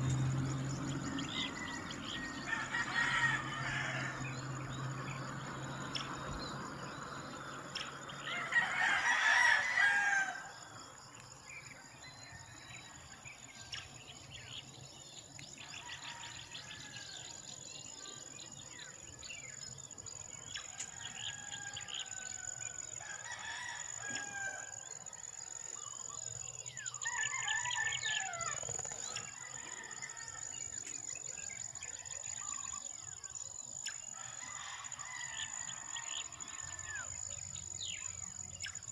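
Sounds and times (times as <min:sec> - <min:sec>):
rooster crowing: 0:00.9 - 0:04.8, 0:08.2 - 0:10.8, 0:20.8 - 0:25.5, 0:26.8 - 0:30.8, 0:34.1 - 0:38.0.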